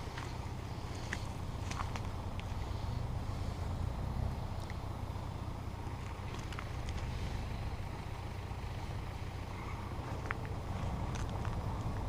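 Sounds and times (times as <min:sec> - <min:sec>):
engine idling: 0:00.0 - 0:12.0.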